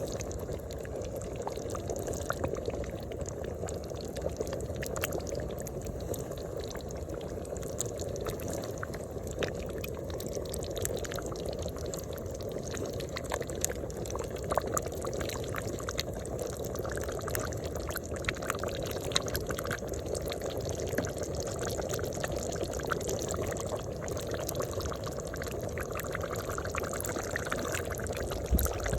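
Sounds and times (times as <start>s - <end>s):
pops and crackles: 26.3s - 28.9s.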